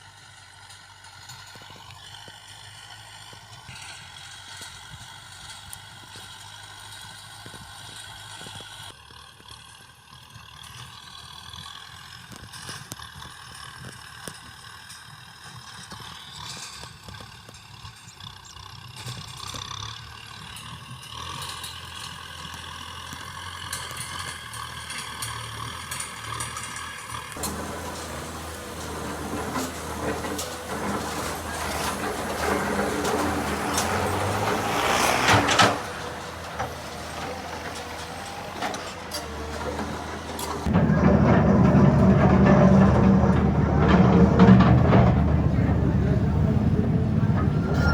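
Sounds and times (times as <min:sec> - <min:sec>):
vehicle engines running: 0:21.1 - 0:47.9
clicks and rattles: 0:27.4 - 0:47.9.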